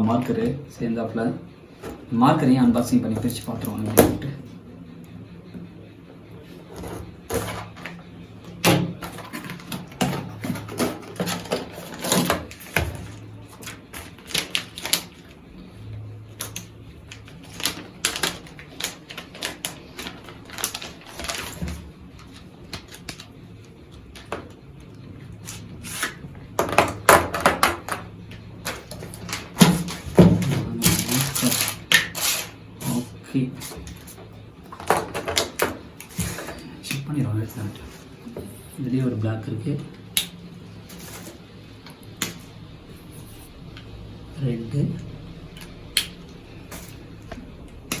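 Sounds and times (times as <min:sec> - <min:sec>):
plastic packaging crinkling and tearing: 0:09.0 - 0:15.4, 0:16.4 - 0:23.3, 0:28.6 - 0:33.0.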